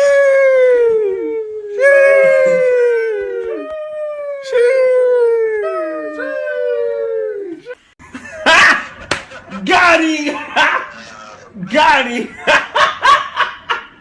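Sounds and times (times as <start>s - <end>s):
dog howling: 0.0s - 7.8s.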